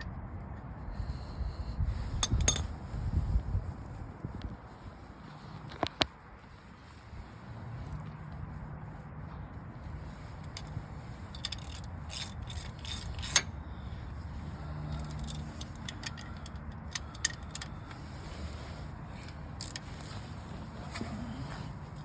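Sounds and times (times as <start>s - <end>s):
metallic clicks of hand tools: 11.4s - 13.5s, 14.9s - 18.0s.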